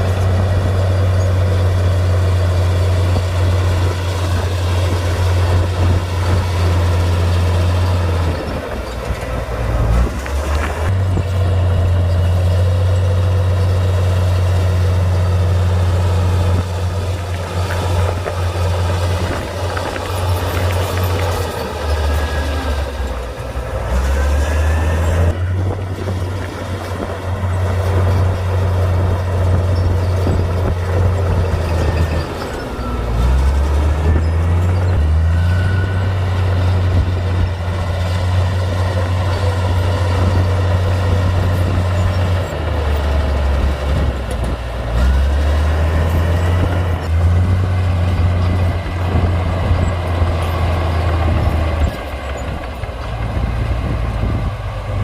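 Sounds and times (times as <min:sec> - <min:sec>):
bulldozer diesel engine droning: 0:00.0 - 0:55.0
faint high squeals: 0:31.4 - 0:36.4.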